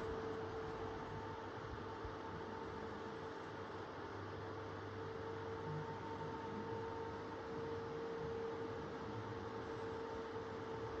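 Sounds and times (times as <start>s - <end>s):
electric fans blowing air: 0.0s - 11.0s
fan motor hum: 0.0s - 11.0s.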